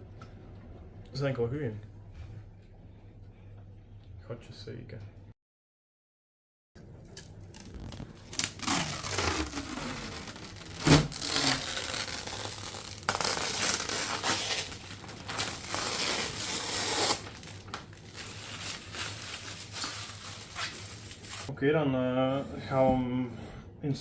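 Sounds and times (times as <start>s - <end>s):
packaging rustling and crinkling: 7.2s - 21.5s.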